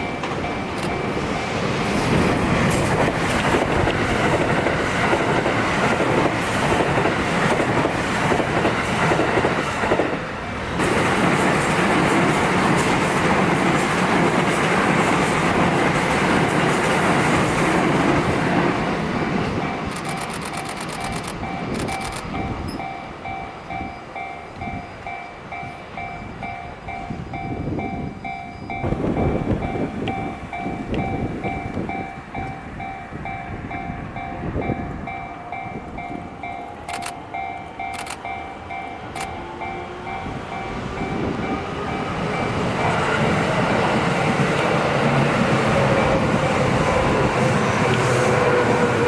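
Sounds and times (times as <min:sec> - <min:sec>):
crossing warning bell ringing: 0:00.0 - 0:01.8, 0:18.5 - 0:43.3
train rolling past: 0:00.0 - 0:49.0.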